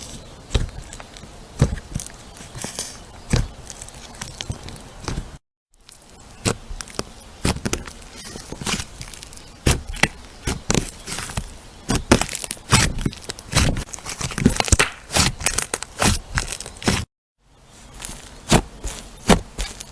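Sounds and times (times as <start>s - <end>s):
crunchy slime crackling and popping: 5.8s - 17.0s.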